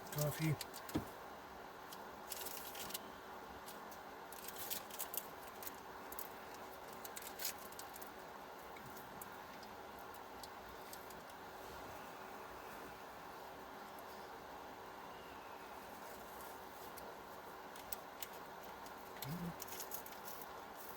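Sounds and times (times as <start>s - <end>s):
faint steady hum: 0.0s - 20.9s
packaging rustling and crinkling: 4.3s - 8.1s.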